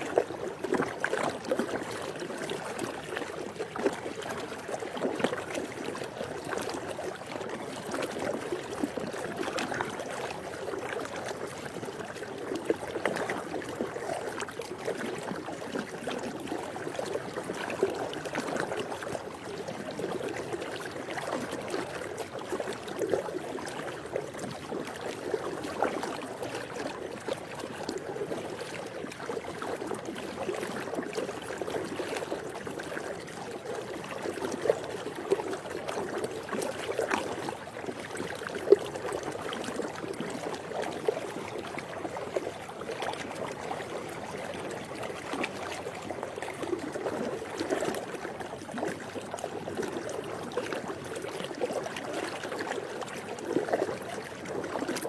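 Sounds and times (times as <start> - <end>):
pool water lapping: 0.0 - 55.0.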